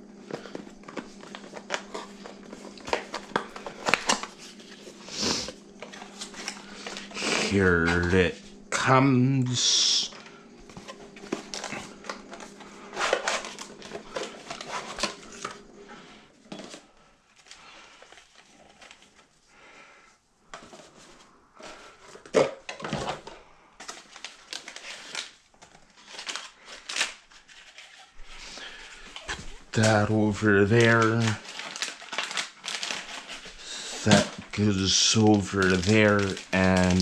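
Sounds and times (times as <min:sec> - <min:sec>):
plastic and metal rustling: 0:10.1 - 0:19.3, 0:20.5 - 0:37.0.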